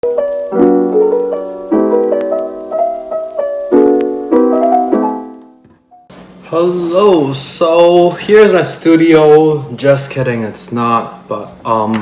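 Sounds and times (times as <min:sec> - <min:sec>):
piano chords and melody: 0:00.0 - 0:08.6.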